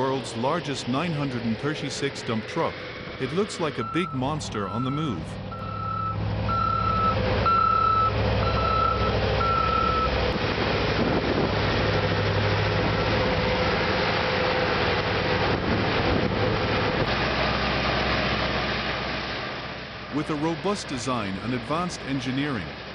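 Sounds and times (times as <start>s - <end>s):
diesel engine running: 0.0s - 22.9s
reversing alarm beeping: 3.2s - 10.2s.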